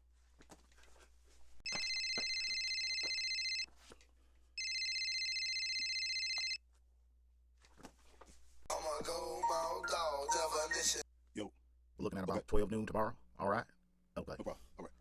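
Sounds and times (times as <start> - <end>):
flip phone ringing: 1.7 - 3.7, 4.6 - 6.6.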